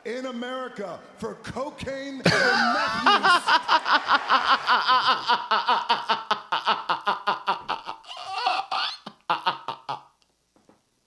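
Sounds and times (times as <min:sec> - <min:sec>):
man laughing hard: 0:02.2 - 0:10.2.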